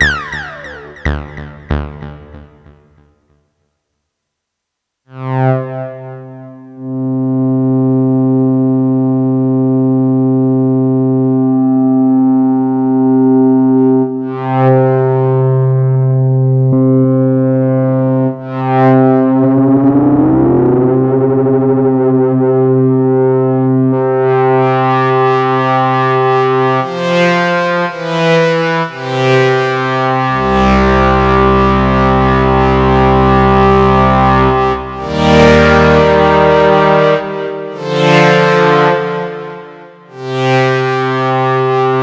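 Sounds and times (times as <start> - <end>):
synthesizer low drone: 0.0 - 3.3, 16.7 - 27.0, 29.1 - 42.0.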